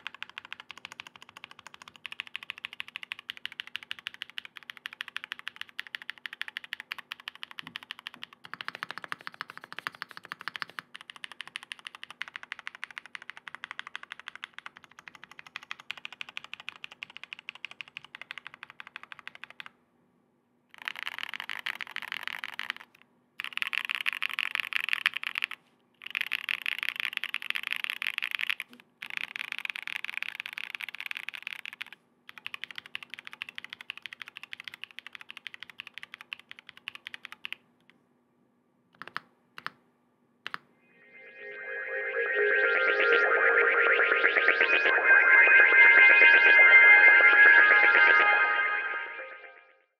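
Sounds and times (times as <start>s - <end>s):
mechanical keyboard typing: 0.0s - 19.7s, 20.8s - 37.6s, 39.0s - 39.8s.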